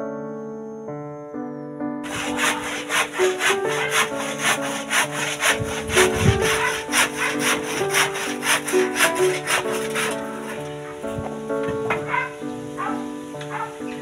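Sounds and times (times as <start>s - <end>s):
background music: 0.0s - 14.0s
handsaw cutting wood: 2.0s - 11.0s.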